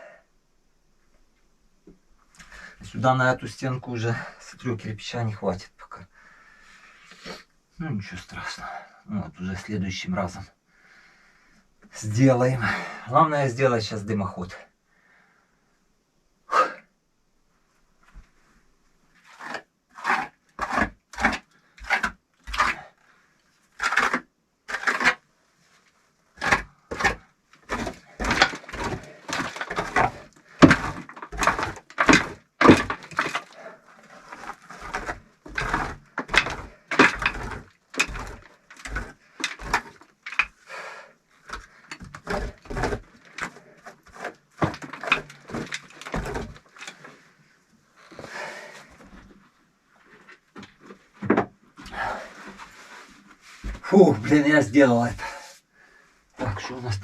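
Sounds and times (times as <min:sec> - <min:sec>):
bricklaying scraping and knocking: 0:19.1 - 0:23.0, 0:23.6 - 0:55.6, 0:56.4 - 0:57.0.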